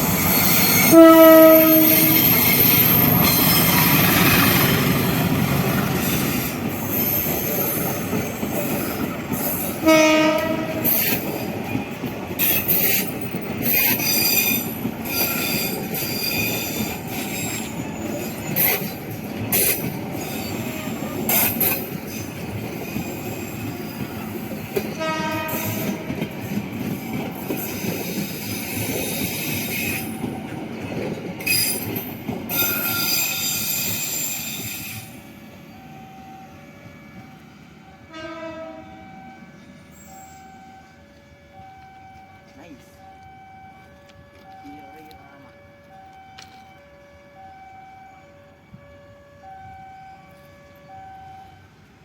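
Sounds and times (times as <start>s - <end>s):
train wheels clattering and squealing: 0.0s - 37.5s, 39.4s - 42.8s
train horn blast: 0.8s - 2.5s, 9.8s - 11.2s, 20.5s - 21.5s, 24.9s - 26.4s, 38.0s - 39.3s.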